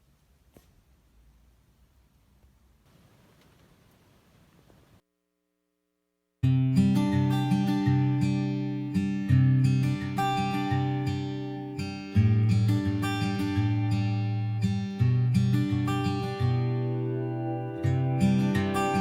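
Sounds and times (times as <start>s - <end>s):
acoustic guitar strumming chords: 6.5s - 19.0s.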